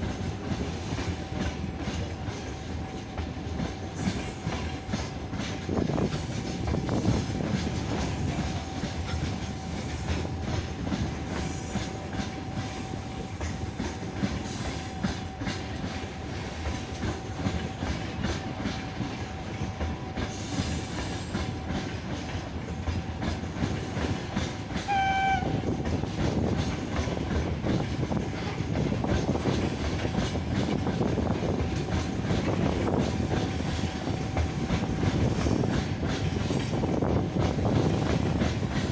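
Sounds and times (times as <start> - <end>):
freight train wheels clattering: 0.0 - 38.9
short high train toot: 24.8 - 25.7.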